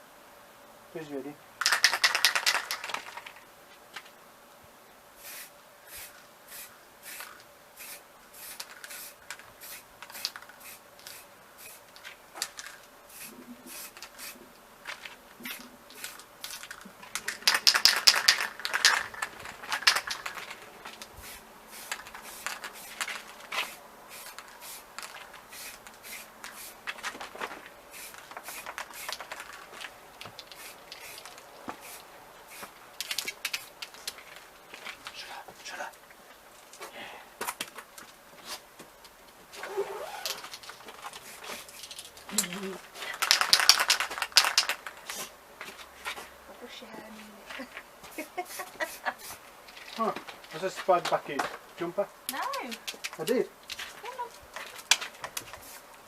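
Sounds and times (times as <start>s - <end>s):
spray paint can hissing: 1.6s - 3.4s, 5.2s - 27.1s, 27.9s - 34.2s, 40.2s - 42.5s, 43.1s - 45.3s, 54.7s - 56.0s.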